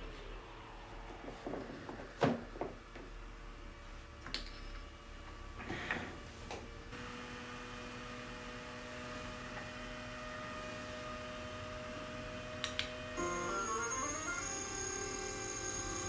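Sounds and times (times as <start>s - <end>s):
small electric motor humming: 13.2s - 16.0s.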